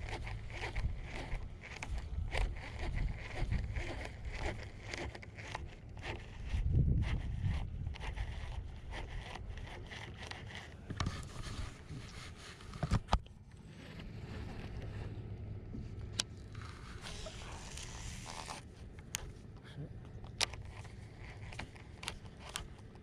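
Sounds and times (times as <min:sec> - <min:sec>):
low steady hum: 0:00.0 - 0:23.0
scraping and knocking handling noise: 0:07.3 - 0:23.0.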